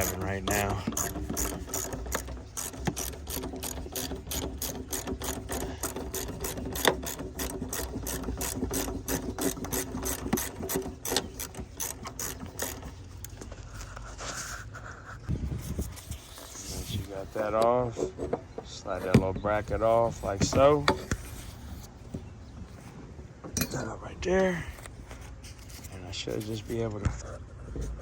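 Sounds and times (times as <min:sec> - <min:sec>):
ratchet wrench clicking: 0:00.0 - 0:13.4.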